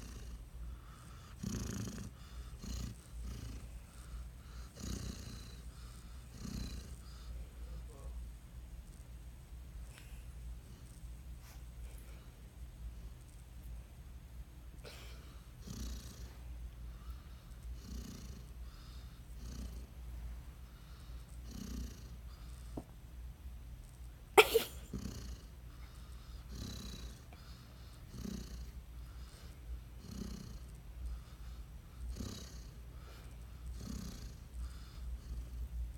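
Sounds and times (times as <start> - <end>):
dog snoring: 0.0 - 8.2, 15.6 - 16.4, 17.0 - 20.0, 20.8 - 22.8, 24.4 - 35.6.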